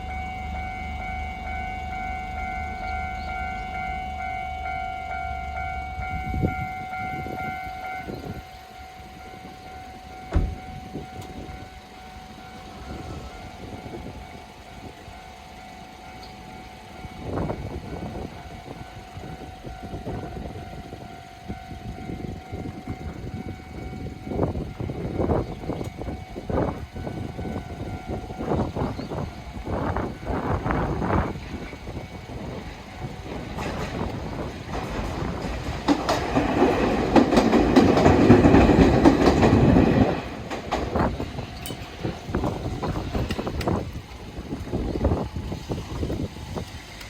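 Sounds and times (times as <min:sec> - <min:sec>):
level crossing bell ringing: 0:00.0 - 0:30.5.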